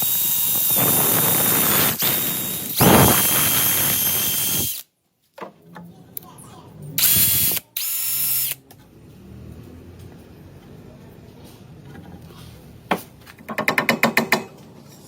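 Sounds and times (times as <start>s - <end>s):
electric drill whining: 0.0s - 4.9s, 7.0s - 8.6s.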